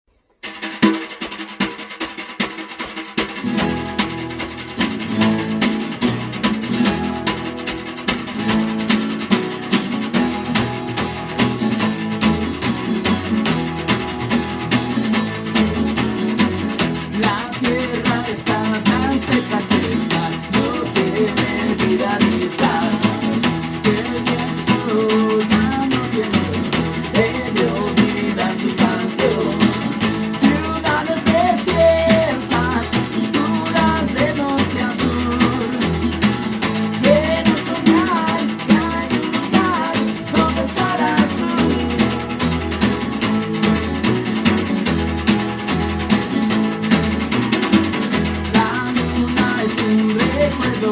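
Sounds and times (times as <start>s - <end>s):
strummed acoustic guitar: 0.4s - 50.9s
walking bass line: 3.1s - 50.9s.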